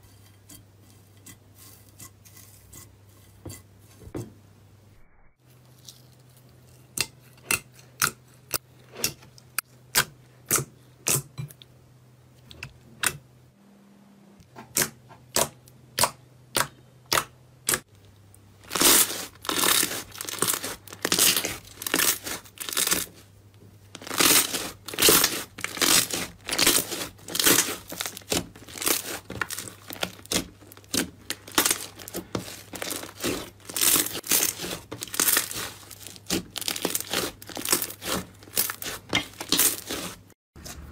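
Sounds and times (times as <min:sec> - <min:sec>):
slime crackling and crunching: 0:18.6 - 0:23.2, 0:23.9 - 0:40.8.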